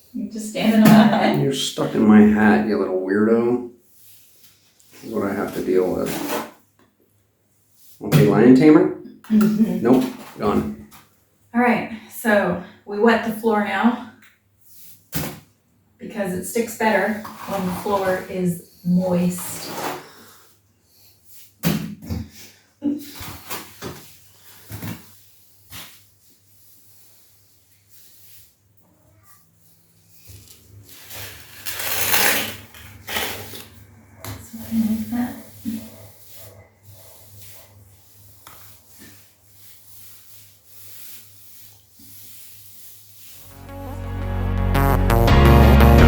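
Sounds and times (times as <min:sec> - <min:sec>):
trowel scraping wet compound: 0:17.2 - 0:18.3.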